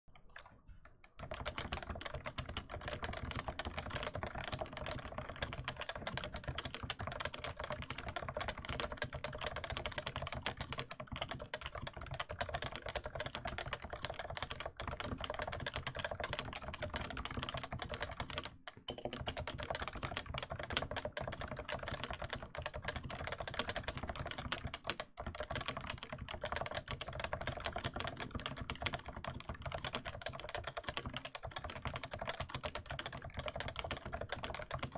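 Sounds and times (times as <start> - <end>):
fast typing on keyboard: 0.2 - 34.9.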